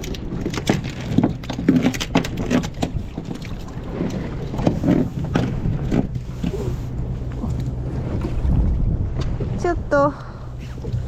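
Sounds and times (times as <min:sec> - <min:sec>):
knocks and clatter of gear: 0:00.0 - 0:06.6
low wind rumble: 0:00.0 - 0:11.0.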